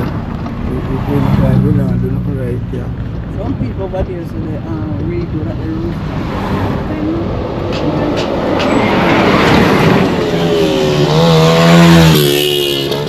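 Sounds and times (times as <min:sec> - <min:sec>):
vehicle road and engine noise: 0:00.0 - 0:13.0.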